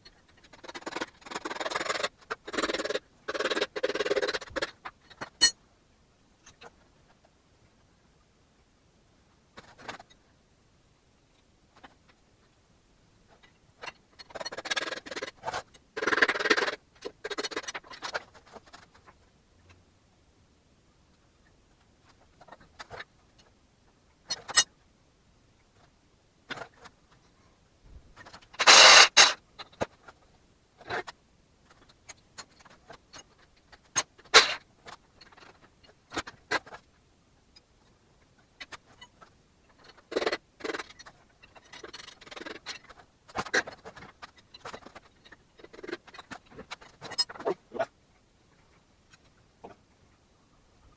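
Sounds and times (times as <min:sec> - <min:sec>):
metal engine parts clinking: 0:28.6 - 0:29.4, 0:34.4 - 0:34.6.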